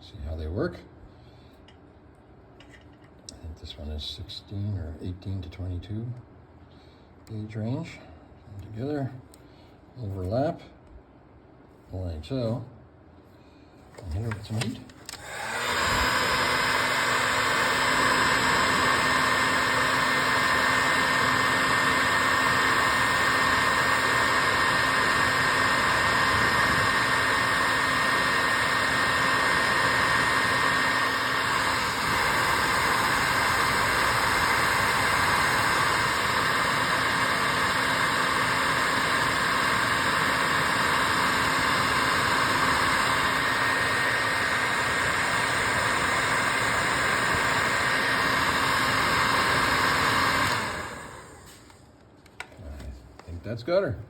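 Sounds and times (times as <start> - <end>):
heat gun blowing air: 14.2 - 51.8.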